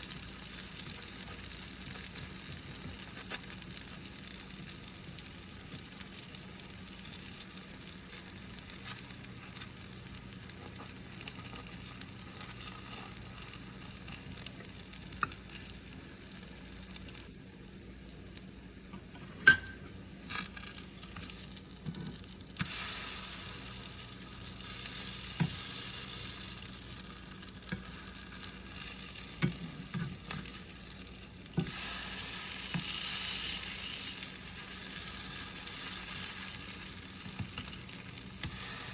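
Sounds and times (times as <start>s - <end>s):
pancakes sizzling in oil: 0.0s - 38.9s
utensil clicking on pan: 24.8s - 38.7s.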